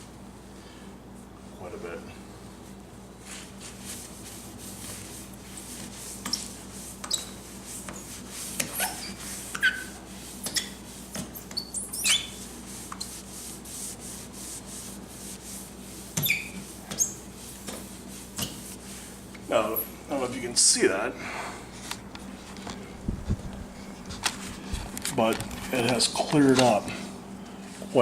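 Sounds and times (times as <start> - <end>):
short high squeaks: 7.0 - 7.4, 8.7 - 12.4, 16.2 - 17.2.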